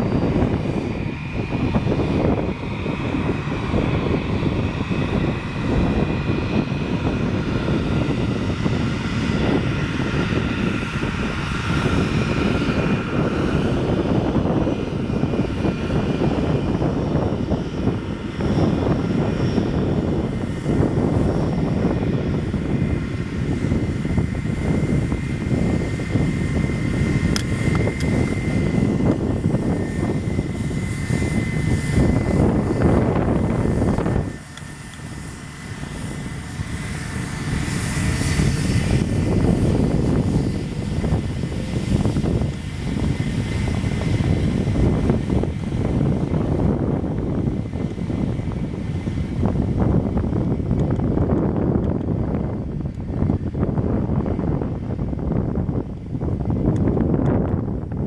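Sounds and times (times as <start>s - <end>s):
jet engines whining: 0.0s - 58.0s
wind buffeting microphone: 0.0s - 58.0s.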